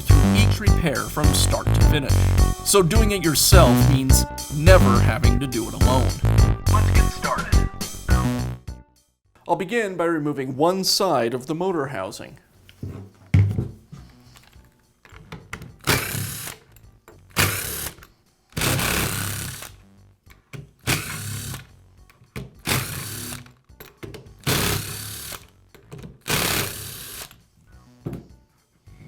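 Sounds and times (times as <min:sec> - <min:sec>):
power screwdriver whirring: 0:15.8 - 0:16.6, 0:17.4 - 0:19.8, 0:20.8 - 0:21.7, 0:22.7 - 0:23.5, 0:24.4 - 0:25.6, 0:26.2 - 0:27.4.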